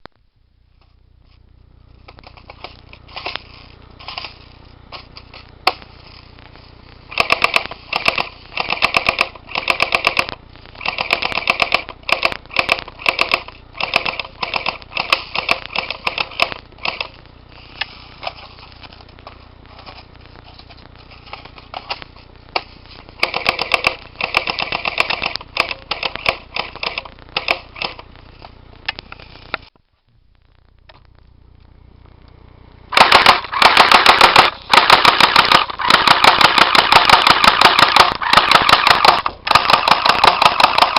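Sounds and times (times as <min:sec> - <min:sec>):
airsoft gun shooting: 0:07.1 - 0:17.0, 0:23.2 - 0:28.0, 0:32.9 - 0:40.9.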